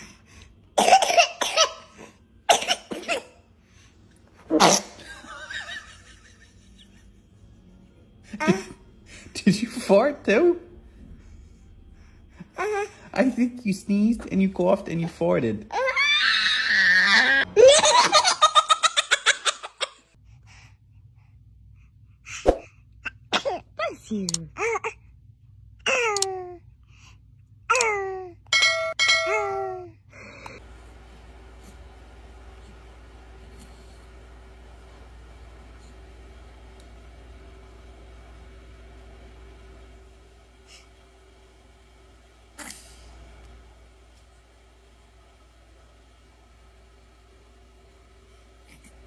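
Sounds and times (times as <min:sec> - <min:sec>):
baby coughing and sneezing: 0:00.8 - 0:03.4, 0:04.5 - 0:05.0, 0:23.0 - 0:23.8
baby sneezing: 0:04.5 - 0:05.0, 0:23.2 - 0:23.7.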